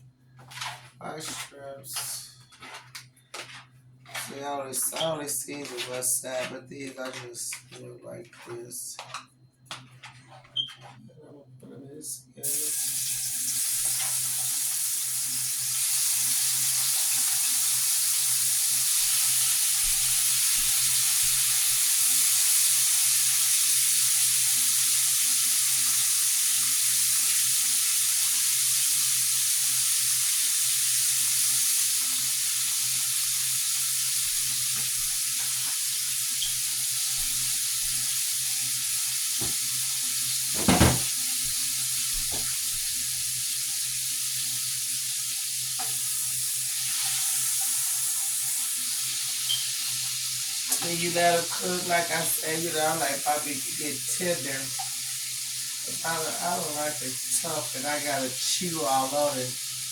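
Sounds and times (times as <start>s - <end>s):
shrimp sizzling in a pan: 12.4s - 59.9s.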